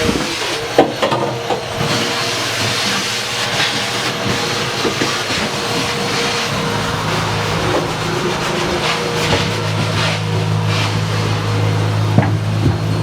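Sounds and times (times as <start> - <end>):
loud hissing: 1.9 - 12.6.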